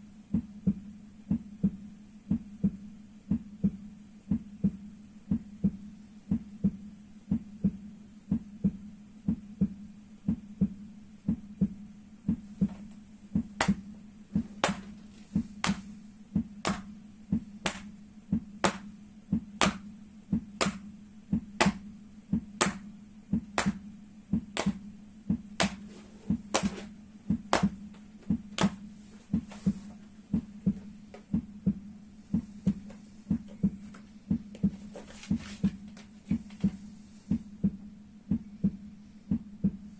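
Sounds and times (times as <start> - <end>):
heartbeat: 0.0 - 39.9
feet slapping together: 12.3 - 13.8, 14.4 - 15.9, 16.6 - 16.9, 17.6 - 17.9, 18.6 - 18.9, 19.6 - 19.8, 20.6 - 20.8, 21.6 - 21.8, 22.6 - 22.8, 23.6 - 23.8, 24.6 - 24.8, 25.6 - 31.4.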